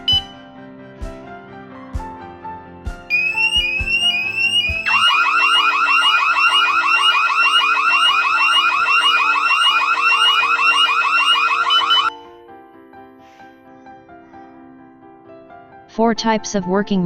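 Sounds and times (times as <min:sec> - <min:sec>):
burglar alarm siren whooping: 0:03.1 - 0:12.2.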